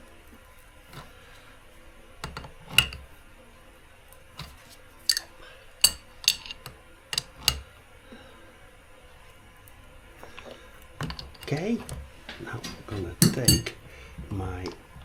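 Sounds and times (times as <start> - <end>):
chain tool metallic clicks: 5.1 - 7.6, 13.2 - 13.8.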